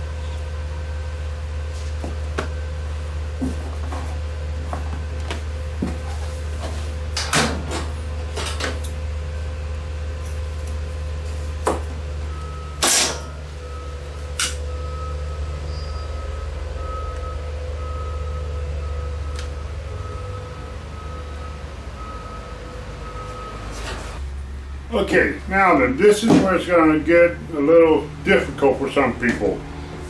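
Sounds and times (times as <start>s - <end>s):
steady low hum: 0.0s - 30.0s.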